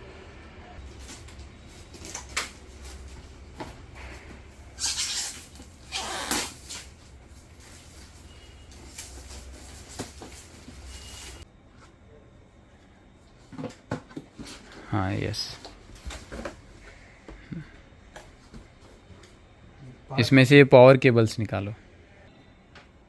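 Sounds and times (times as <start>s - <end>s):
packaging ripping: 4.8s - 6.9s.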